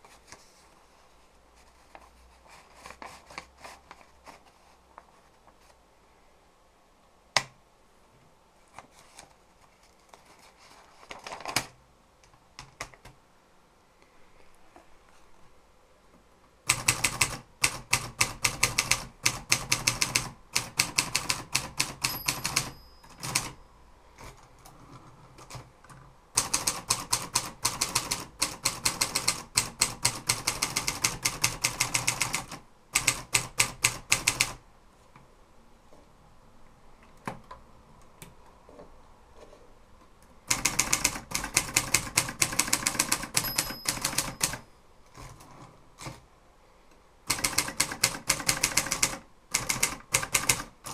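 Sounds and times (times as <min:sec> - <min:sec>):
typewriter keys striking: 0:16.7 - 0:23.6, 0:26.4 - 0:34.6, 0:40.5 - 0:44.6, 0:47.3 - 0:50.9
typewriter bell ring: 0:21.1 - 0:23.7, 0:42.6 - 0:44.8.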